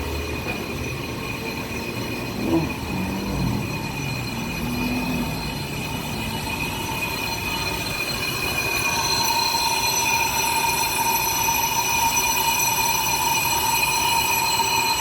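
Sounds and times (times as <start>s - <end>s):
low whine: 0.0s - 10.0s
lathe cutting tool squealing on metal: 0.0s - 15.0s.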